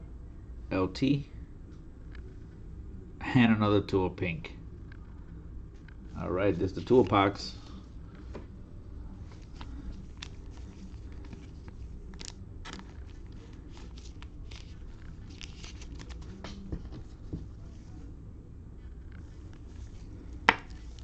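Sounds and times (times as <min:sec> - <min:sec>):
steady low hum: 0:00.0 - 0:21.0
cellophane wrappers crinkling: 0:09.3 - 0:16.8.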